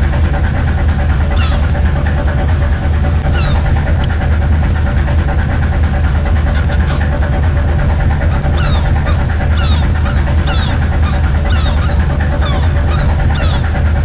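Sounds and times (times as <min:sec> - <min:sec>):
fishing boat engine droning: 0:00.0 - 0:14.0
high calls falling in pitch: 0:01.4 - 0:01.7, 0:03.4 - 0:03.6, 0:08.3 - 0:13.7.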